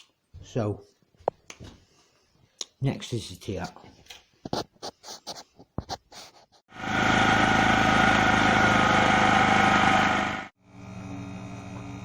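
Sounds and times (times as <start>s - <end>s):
small motor humming: 6.7s - 12.0s.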